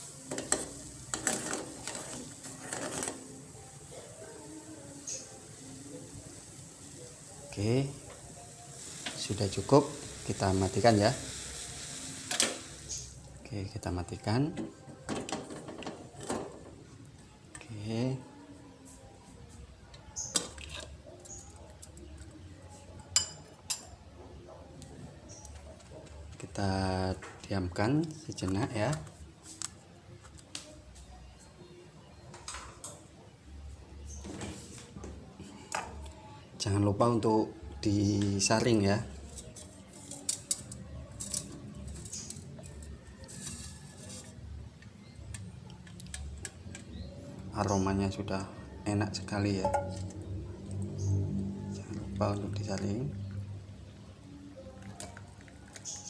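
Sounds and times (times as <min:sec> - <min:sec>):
kitchen utensils clinking: 0:00.2 - 0:03.4, 0:23.1 - 0:24.0, 0:49.6 - 0:50.2
kitchenware clinks: 0:49.6 - 0:50.1.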